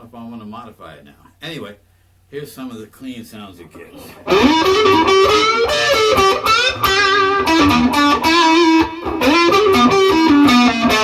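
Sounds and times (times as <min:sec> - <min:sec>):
clean electric guitar melody: 0:04.2 - 0:11.0.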